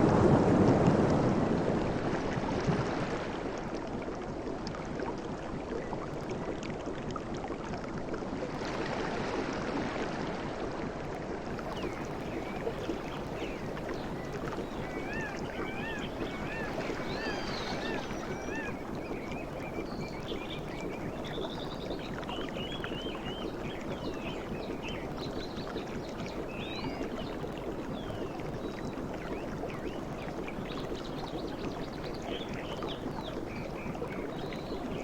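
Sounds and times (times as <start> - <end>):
sea waves breaking on shore: 0.0 - 3.9, 8.6 - 10.7, 11.4 - 19.8
bird calling in wavering notes: 14.3 - 19.2.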